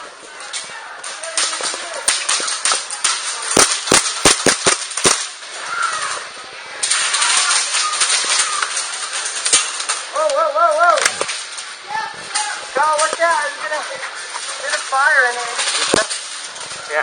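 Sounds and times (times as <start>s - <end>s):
airsoft guns firing: 2.0s - 5.4s.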